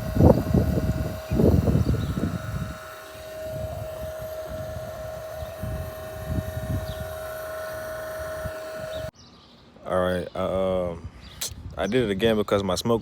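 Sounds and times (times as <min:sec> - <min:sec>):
rough low rumbling on microphone: 0:00.0 - 0:02.8
air pump humming: 0:00.0 - 0:09.2.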